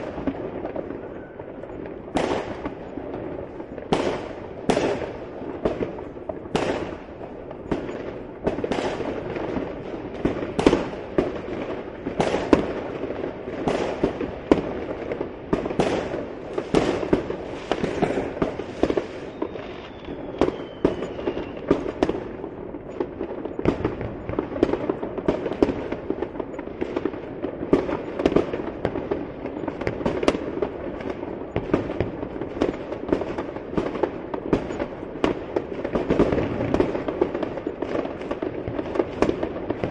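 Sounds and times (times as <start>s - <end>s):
crackle of distant explosions: 0.0s - 39.9s
fireworks bangs and pops: 0.0s - 39.9s.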